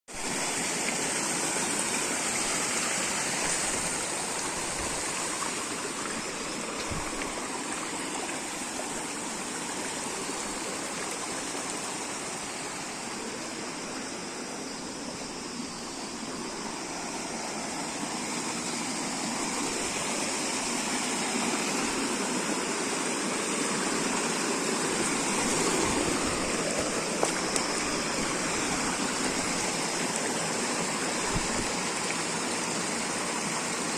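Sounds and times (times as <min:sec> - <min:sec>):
fast-flowing water rushing: 0:00.1 - 0:33.9.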